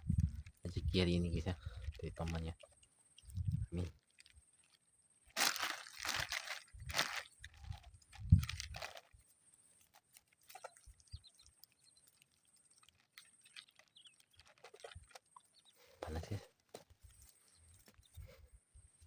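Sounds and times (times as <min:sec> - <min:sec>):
rustling handling noise: 0:05.3 - 0:10.7
faint bird chirps: 0:10.5 - 0:19.0.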